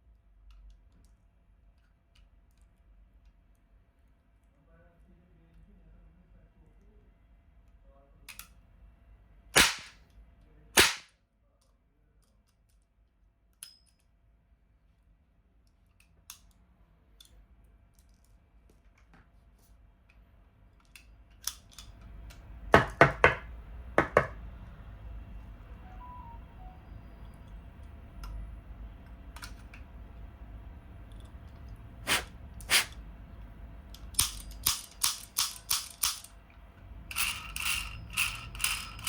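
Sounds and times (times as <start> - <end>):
toy revolver shots: 9.6 - 10.0, 10.8 - 11.1.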